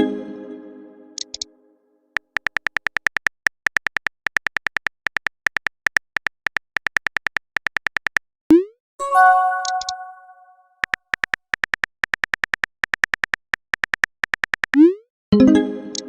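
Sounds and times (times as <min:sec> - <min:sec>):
chime: 0:09.0 - 0:10.6.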